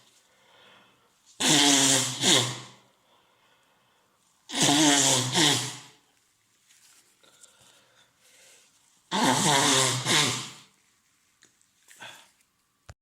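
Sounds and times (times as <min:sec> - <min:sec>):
man blowing nose: 0:01.3 - 0:03.0, 0:04.5 - 0:06.0, 0:08.3 - 0:10.8.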